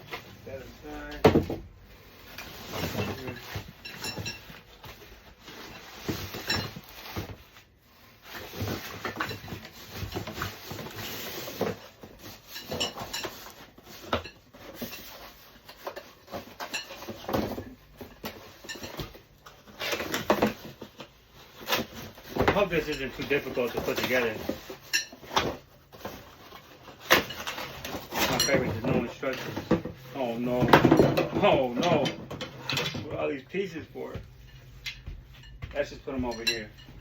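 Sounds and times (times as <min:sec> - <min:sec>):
plastic parts clicking and knocking: 0:08.2 - 0:33.3.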